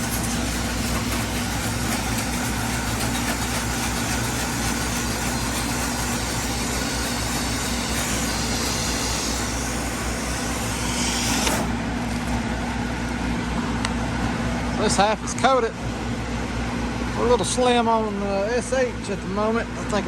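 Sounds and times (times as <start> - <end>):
spray hissing: 0.0 - 13.7
small gas engine running: 0.0 - 19.2.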